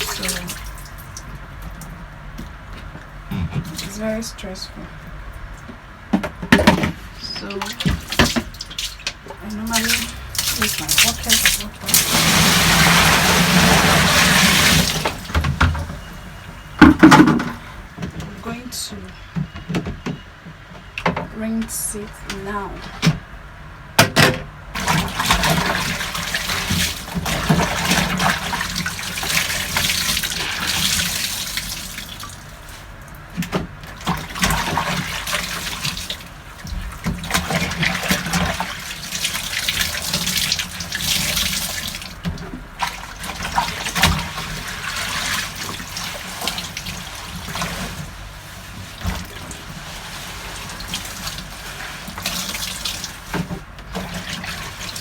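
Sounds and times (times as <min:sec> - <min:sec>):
water sloshing in washing machine: 0:00.0 - 0:55.0
sharp knocks: 0:16.8 - 0:17.6.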